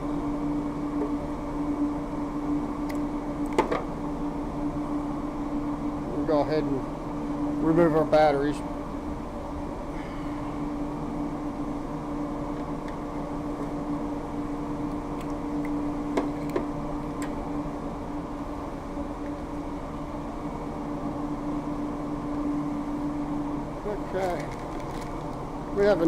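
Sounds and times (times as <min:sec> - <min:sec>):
electrical hum: 0:00.0 - 0:26.0.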